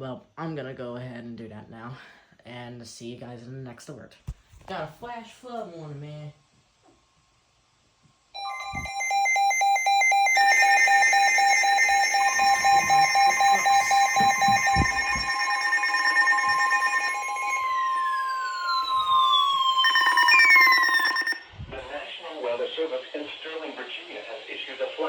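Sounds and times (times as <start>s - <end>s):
fast pulsing beep: 8.4s - 21.4s
steady alert tones: 8.4s - 21.4s
siren-like tones sweeping down: 8.4s - 21.5s.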